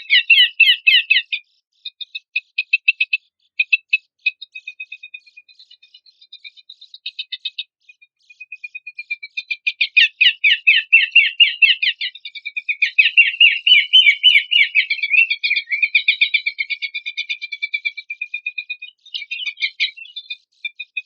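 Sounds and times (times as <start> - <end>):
bird singing chattering notes: 0.0 - 21.0.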